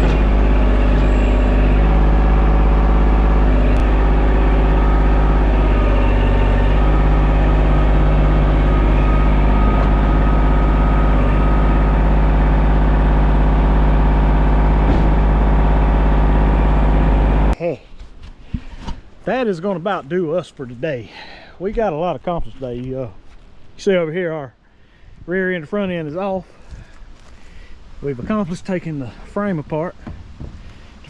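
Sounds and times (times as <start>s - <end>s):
vehicle engine idling: 0.0s - 17.6s.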